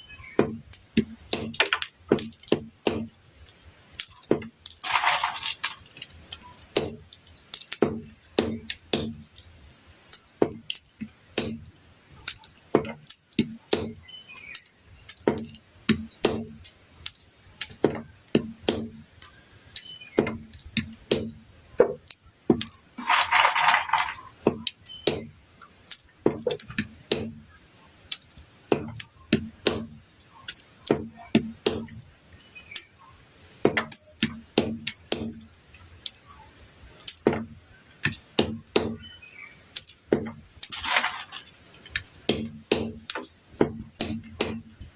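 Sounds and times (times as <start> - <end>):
knife chopping on a board: 0.4 - 3.2, 6.8 - 7.0, 7.8 - 9.2, 11.4 - 11.7, 12.7 - 14.0, 15.2 - 16.6, 17.7 - 19.0, 20.2 - 22.8, 24.4 - 25.3, 26.2 - 27.4, 28.7 - 30.0, 30.9 - 32.0, 33.6 - 35.5, 38.1 - 39.1, 42.3 - 44.9.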